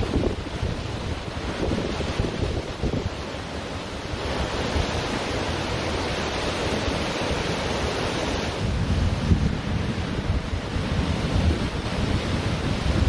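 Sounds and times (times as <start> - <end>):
ocean surf washing onto beach: 0.0 - 13.0
wind buffeting microphone: 0.0 - 13.0.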